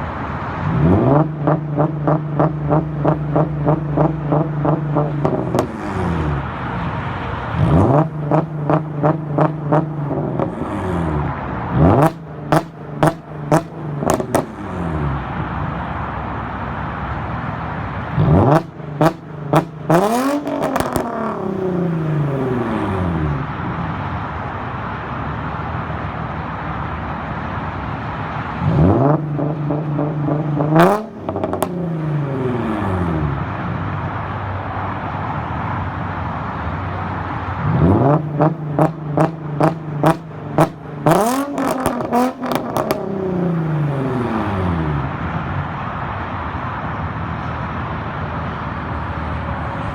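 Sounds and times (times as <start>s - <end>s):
car engine revving: 0.0s - 16.5s, 17.4s - 24.3s, 28.3s - 34.3s, 37.2s - 45.5s
exhaust crackles and pops: 0.8s - 6.6s, 7.6s - 15.4s, 18.2s - 22.4s, 37.9s - 44.1s.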